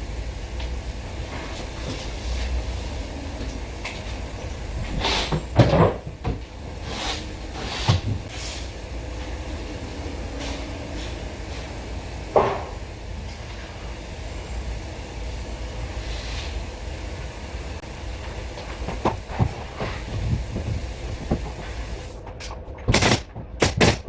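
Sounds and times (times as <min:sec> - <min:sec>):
steady low hum: 0:00.0 - 0:24.0
construction knocks and clatters: 0:18.2 - 0:24.0.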